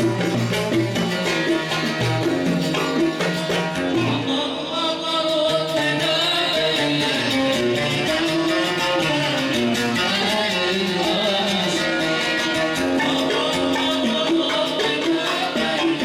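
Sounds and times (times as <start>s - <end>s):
song with plucked strings: 0.0s - 4.3s.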